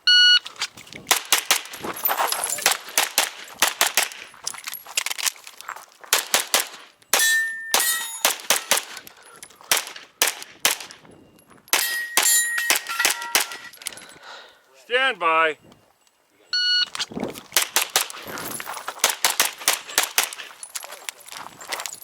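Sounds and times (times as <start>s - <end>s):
pistol shots: 1.1s - 1.8s, 2.6s - 4.2s, 6.1s - 9.0s, 9.7s - 11.0s, 11.7s - 13.7s, 17.6s - 18.2s, 19.0s - 20.4s
steel targets clanging: 1.1s - 5.0s, 6.6s - 9.6s, 11.2s - 14.2s.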